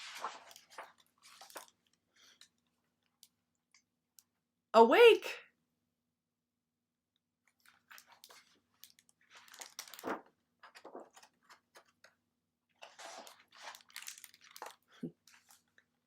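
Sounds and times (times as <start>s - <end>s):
book pages turning: 0.0s - 2.6s, 7.5s - 12.1s, 12.8s - 15.8s
paper rustling and soft clicks: 0.0s - 3.9s, 7.4s - 15.9s.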